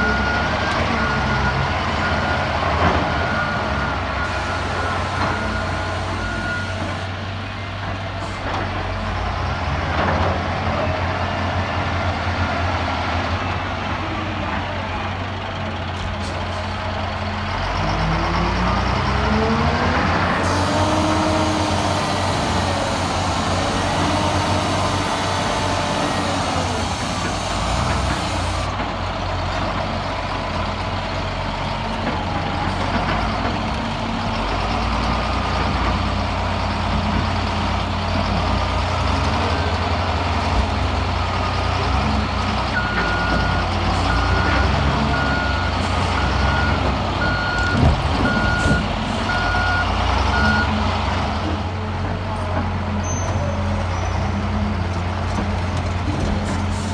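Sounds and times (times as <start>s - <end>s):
reversing alarm beeping: 0.0s - 7.1s, 42.8s - 50.8s
heavy diesel engine drone: 0.0s - 56.9s.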